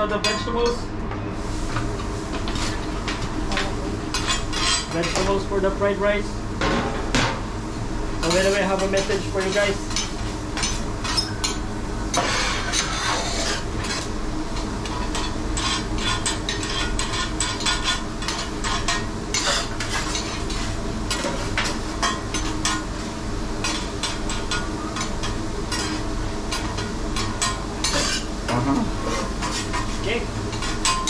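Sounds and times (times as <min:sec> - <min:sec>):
metal spatulas on griddle: 0:02.5 - 0:05.4, 0:08.2 - 0:23.0, 0:23.6 - 0:31.0
vegetables sizzling: 0:07.6 - 0:31.0.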